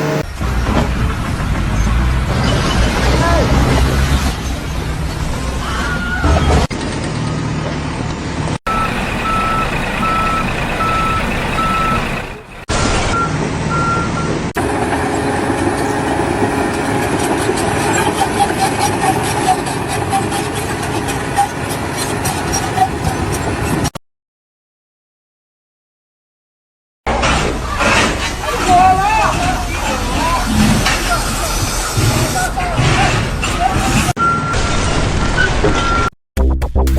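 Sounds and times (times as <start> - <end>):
engine noise: 0.0 - 24.0
reversing alarm beeping: 8.7 - 12.5, 13.1 - 17.2, 34.2 - 34.6.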